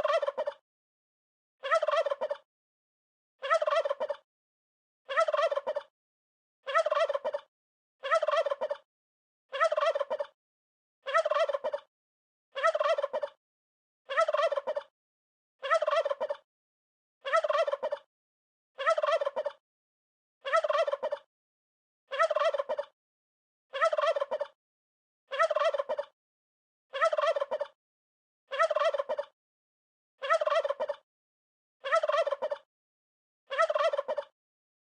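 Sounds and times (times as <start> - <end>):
turkey gobbling: 0.0 - 0.6, 1.6 - 2.4, 3.4 - 4.2, 5.1 - 5.9, 6.7 - 8.8, 9.6 - 10.4, 11.1 - 11.9, 12.6 - 13.4, 14.1 - 14.9, 15.6 - 16.4, 17.3 - 18.1, 18.8 - 19.6, 20.5 - 21.3, 22.1 - 22.9, 23.8 - 24.6, 25.3 - 26.1, 27.0 - 27.8, 28.5 - 29.3, 30.2 - 31.0, 31.8 - 32.6, 33.5 - 34.3.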